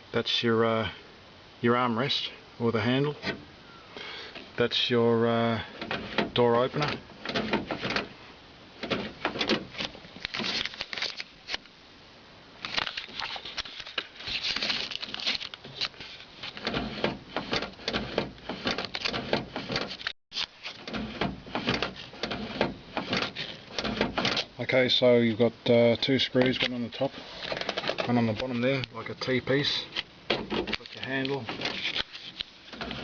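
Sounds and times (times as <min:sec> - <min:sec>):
clicks taps and rustles of handling: 0:26.4 - 0:29.0.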